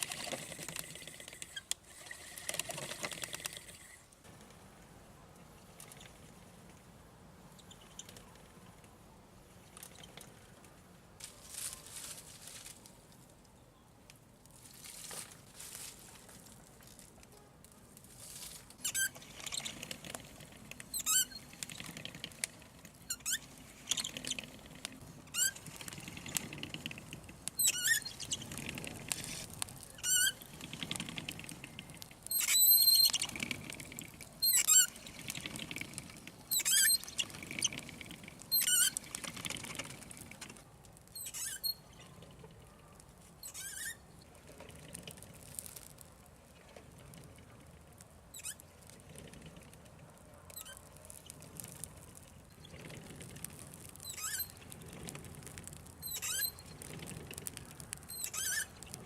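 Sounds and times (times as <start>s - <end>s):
faint rustling: 9.6s - 13.5s, 14.4s - 59.0s
high-pitched squeaks: 18.8s - 20.1s, 20.9s - 22.1s, 23.0s - 24.6s, 25.3s - 26.9s, 27.5s - 31.1s, 32.2s - 35.5s, 36.5s - 39.2s, 41.2s - 42.0s, 43.4s - 44.2s, 48.3s - 48.7s, 50.5s - 51.9s, 53.9s - 55.1s, 56.0s - 57.0s, 58.0s - 59.0s.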